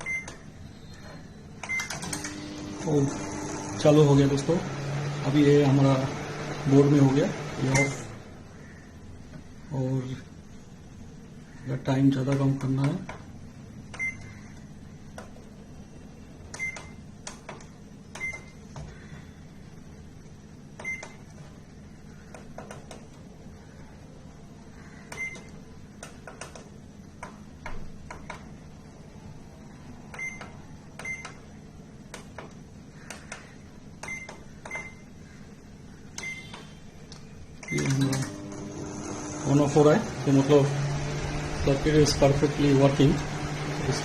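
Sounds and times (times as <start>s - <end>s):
microwave buzzer beeps: 0.0s - 8.2s, 13.9s - 14.4s, 16.5s - 17.1s, 18.2s - 18.7s, 20.8s - 21.3s, 25.1s - 25.6s, 30.1s - 31.5s, 34.0s - 35.2s, 36.2s - 36.9s, 37.6s - 39.8s.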